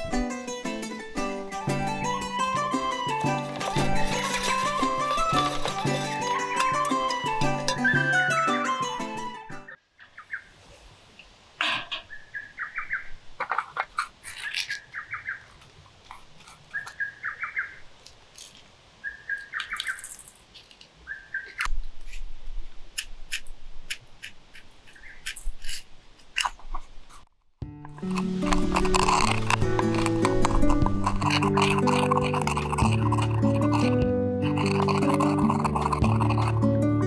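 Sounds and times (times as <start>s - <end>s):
birds chirping: 11.9s - 15.6s, 16.6s - 17.9s, 19.0s - 20.2s, 21.0s - 21.7s, 24.8s - 25.3s.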